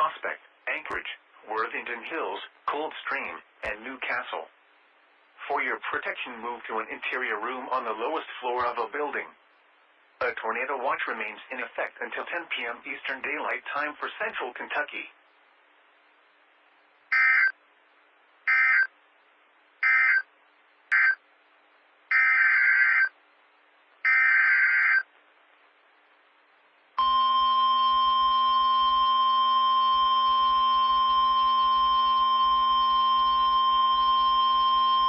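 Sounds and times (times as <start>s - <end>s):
steady warning alarm tone: 27.0s - 35.0s.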